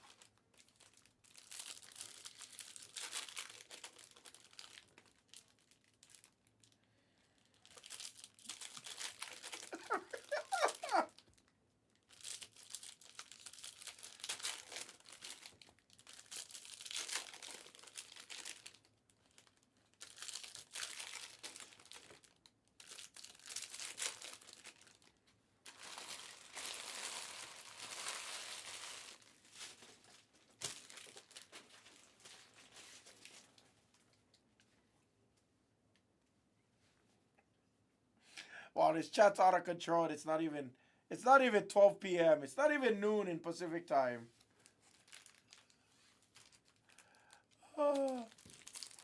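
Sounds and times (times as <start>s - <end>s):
card pack wrappers crinkling and tearing: 0.0s - 6.8s, 7.5s - 11.4s, 12.0s - 33.6s, 44.4s - 49.0s.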